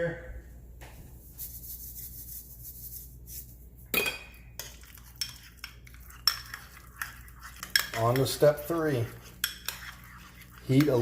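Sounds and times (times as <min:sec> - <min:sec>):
utensil clinking against bowl: 0:03.9 - 0:11.0.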